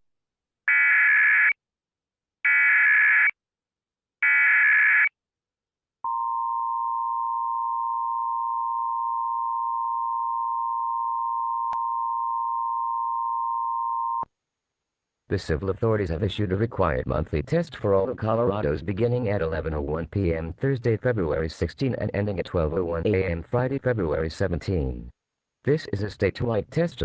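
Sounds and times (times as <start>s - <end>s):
steady attention tone: 6.0s - 14.3s.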